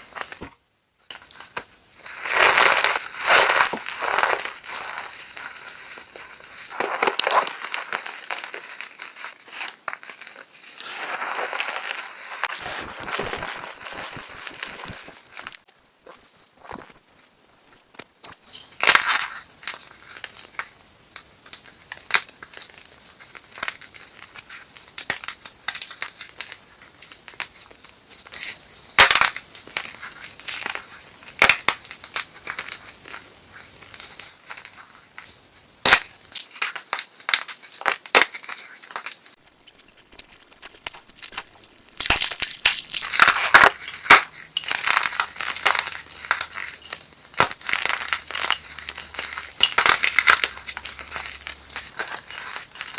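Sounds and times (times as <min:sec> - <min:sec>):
chalk crunching and crackling: 0:00.0 - 0:52.9.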